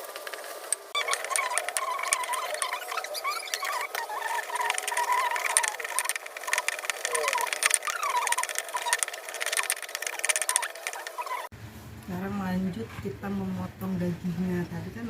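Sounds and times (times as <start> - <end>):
short squeaky glides: 0.9 - 11.5.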